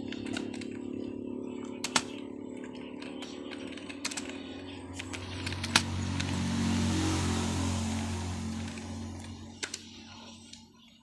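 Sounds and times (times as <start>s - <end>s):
computer keyboard keystrokes: 0.1s - 0.8s, 1.6s - 5.9s
low rushing noise: 5.0s - 9.7s.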